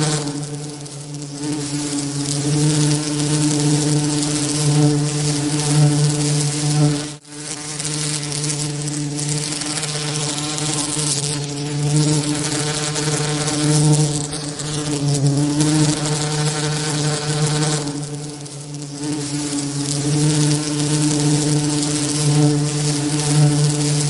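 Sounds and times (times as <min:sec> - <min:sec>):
bee buzzing drone: 0:00.0 - 0:24.0
even hiss: 0:00.0 - 0:24.0.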